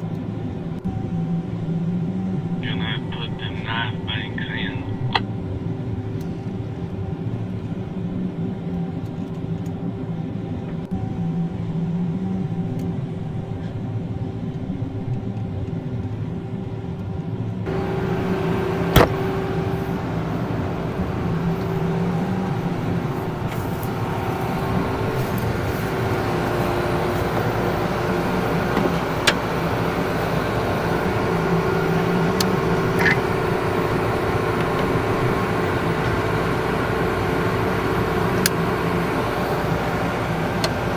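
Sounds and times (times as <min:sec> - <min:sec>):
vehicle engine running: 0:00.0 - 0:40.9.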